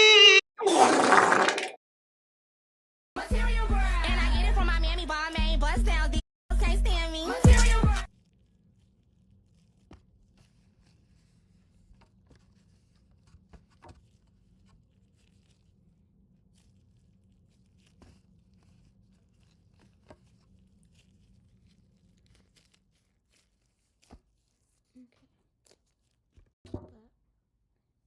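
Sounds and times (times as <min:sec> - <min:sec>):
clay slime clicks and crackles: 0:16.4 - 0:26.6.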